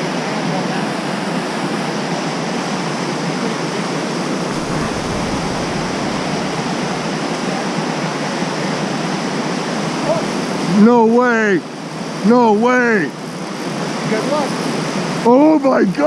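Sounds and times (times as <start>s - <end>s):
whitewater rapids rushing: 4.3s - 9.2s.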